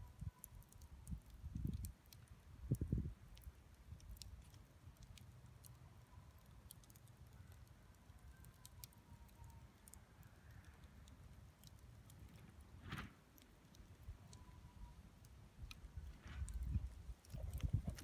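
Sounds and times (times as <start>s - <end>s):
campfire crackling: 0.0s - 18.0s.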